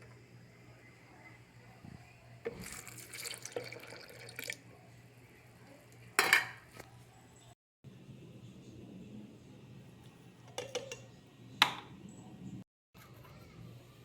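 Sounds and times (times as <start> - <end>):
liquid pouring into blender jar: 2.5 - 4.6
kitchenware clink: 6.2 - 6.7, 10.5 - 11.9.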